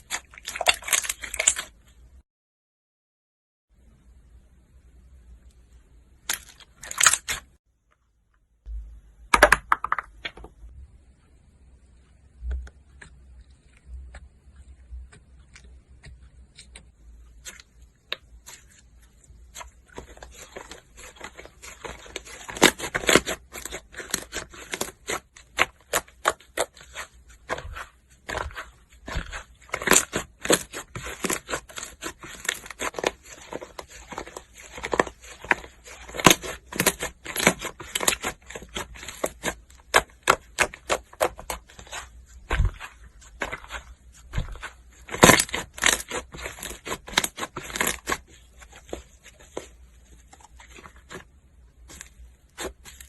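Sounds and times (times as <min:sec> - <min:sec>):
slime crackling and popping: 0:17.3 - 0:48.4.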